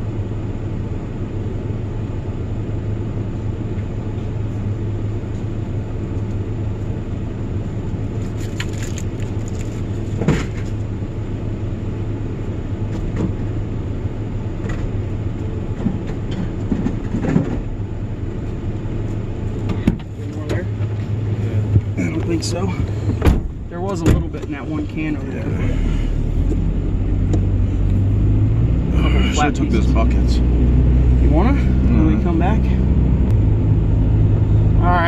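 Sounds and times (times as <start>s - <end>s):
truck engine and road rumble: 0.0s - 35.0s
knocks and rattles: 15.7s - 17.7s.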